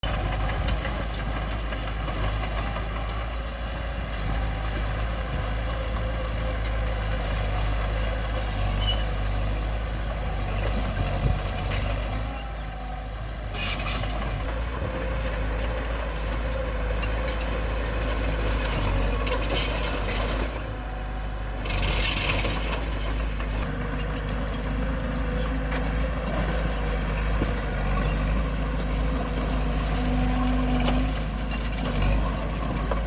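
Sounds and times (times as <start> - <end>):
bulldozer diesel engine running: 0.0 - 33.0
clatter: 21.6 - 33.0.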